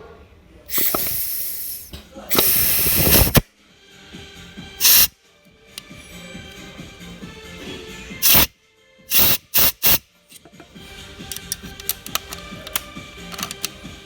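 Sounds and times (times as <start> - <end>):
compressed air hissing bursts: 0.7 - 3.4, 4.8 - 5.1, 8.2 - 8.5, 9.1 - 10.0.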